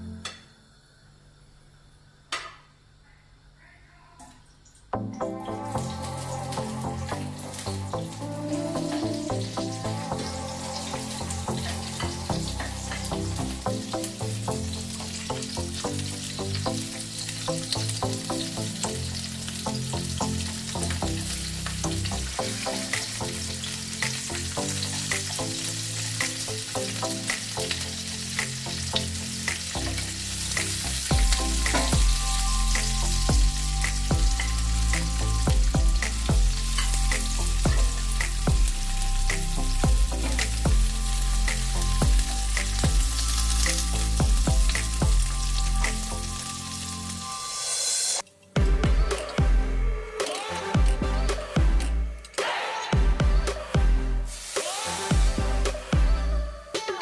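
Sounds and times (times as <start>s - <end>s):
food sizzling in oil: 5.0s - 48.3s, 54.3s - 55.5s.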